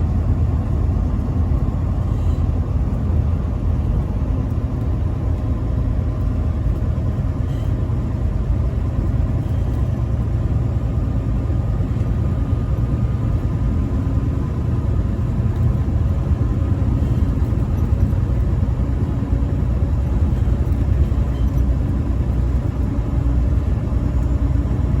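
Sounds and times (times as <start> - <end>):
road noise: 0.0 - 25.0
truck engine rumble: 0.0 - 25.0.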